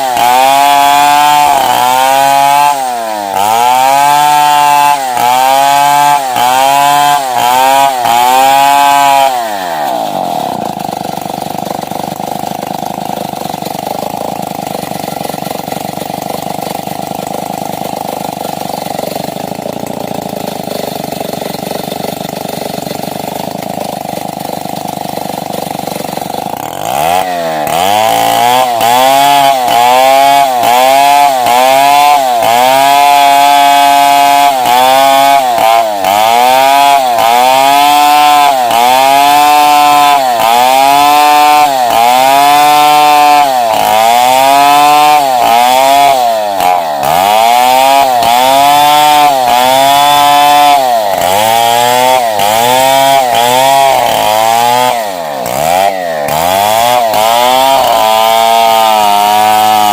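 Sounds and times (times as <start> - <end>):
chainsaw cutting through wood: 0.0 - 59.9.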